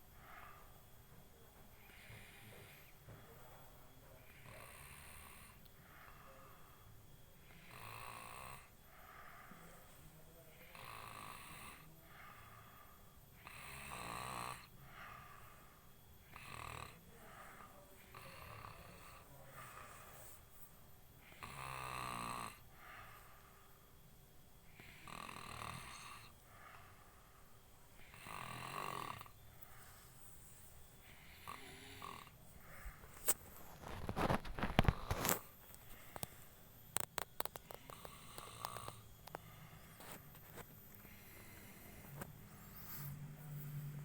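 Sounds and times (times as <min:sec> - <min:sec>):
quiet breaths: 0:00.0 - 0:44.0
man snoring: 0:01.8 - 0:03.2, 0:04.2 - 0:06.5, 0:07.4 - 0:08.8, 0:10.6 - 0:12.7, 0:13.4 - 0:15.6, 0:16.2 - 0:20.4, 0:21.2 - 0:23.2, 0:24.7 - 0:27.1, 0:28.0 - 0:35.5, 0:37.0 - 0:40.2.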